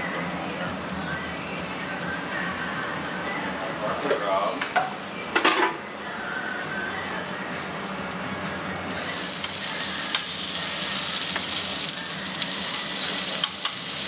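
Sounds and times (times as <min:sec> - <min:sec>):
meat sizzling on grill: 0:09.0 - 0:14.0.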